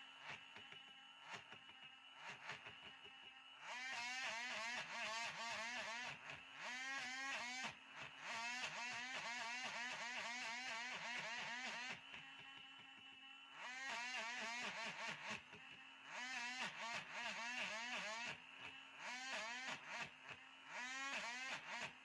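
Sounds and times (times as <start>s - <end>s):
electric sander on wood: 0.0s - 22.0s.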